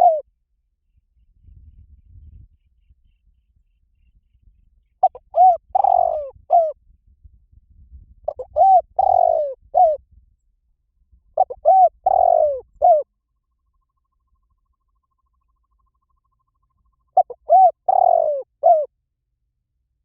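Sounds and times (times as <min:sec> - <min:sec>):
dove cooing: 0:00.0 - 0:00.2, 0:05.0 - 0:06.8, 0:08.3 - 0:10.0, 0:11.4 - 0:13.0, 0:17.2 - 0:18.9.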